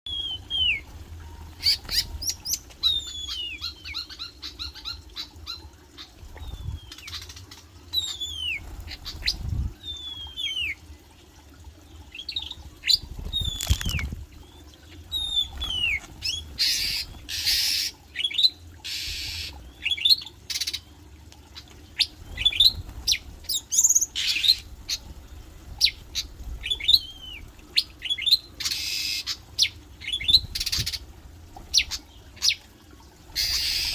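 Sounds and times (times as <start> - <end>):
wing flapping: 12.9 - 14.3, 22.2 - 23.7.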